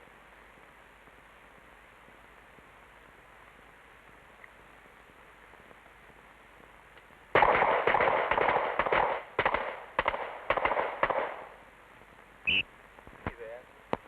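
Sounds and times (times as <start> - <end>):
rapid pistol fire: 7.3 - 11.6.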